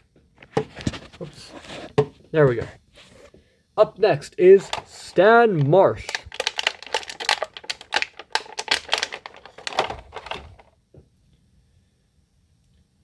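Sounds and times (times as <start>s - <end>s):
plastic packaging crackling: 4.4s - 10.7s.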